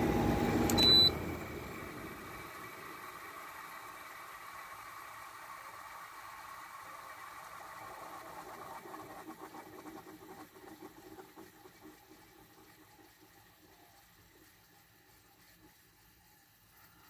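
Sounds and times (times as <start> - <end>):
refrigerant hissing through coils: 0.0 - 17.0
fluttering liquid rush: 4.9 - 13.5.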